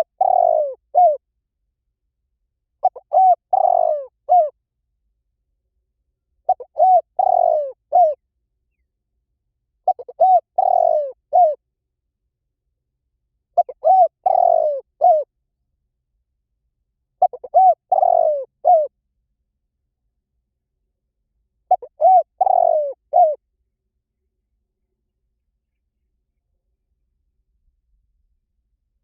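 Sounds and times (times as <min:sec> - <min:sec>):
dove cooing: 0:00.0 - 0:01.2, 0:02.8 - 0:04.6, 0:06.5 - 0:08.2, 0:09.8 - 0:11.6, 0:13.6 - 0:15.3, 0:17.2 - 0:18.9, 0:21.7 - 0:23.4.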